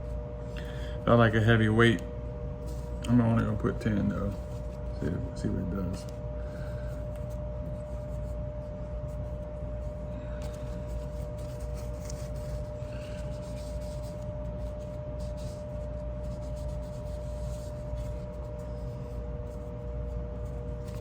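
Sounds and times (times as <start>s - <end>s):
steady background hum: 0.0s - 21.0s
rubbing and scratching of knife parts: 10.5s - 21.0s.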